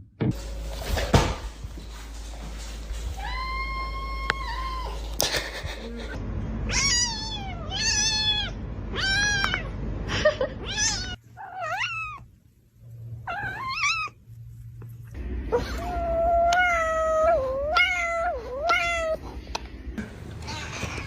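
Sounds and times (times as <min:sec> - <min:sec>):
cat meowing: 0:06.7 - 0:09.7, 0:10.6 - 0:12.3, 0:13.3 - 0:14.2.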